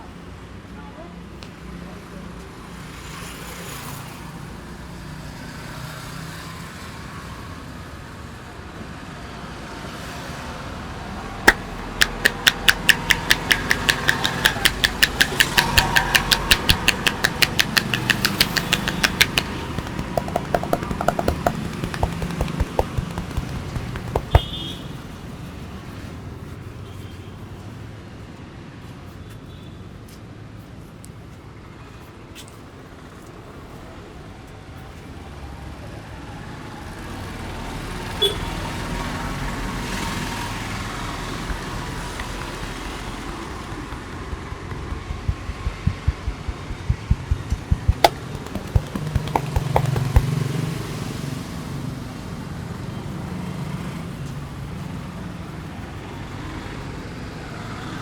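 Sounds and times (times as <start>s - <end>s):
street traffic noise: 7.7s - 58.0s
rapid sharp taps: 11.5s - 25.0s, 41.5s - 50.5s.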